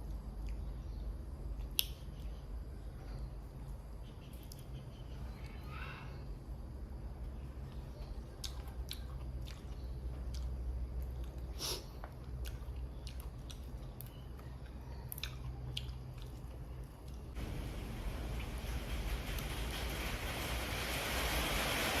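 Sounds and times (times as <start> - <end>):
person chewing and eating: 7.6 - 17.4.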